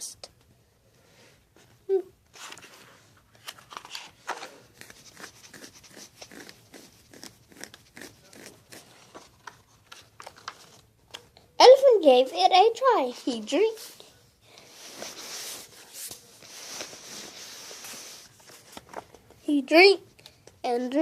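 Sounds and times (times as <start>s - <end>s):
paper crinkling: 2.3s - 11.2s, 14.9s - 19.4s.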